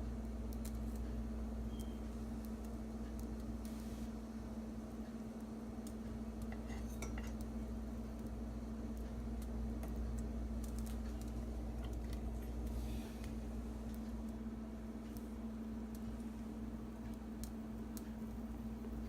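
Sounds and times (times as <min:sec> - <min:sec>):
steady low hum: 0:00.0 - 0:19.0
metal spoon clinking on pan: 0:06.5 - 0:07.4.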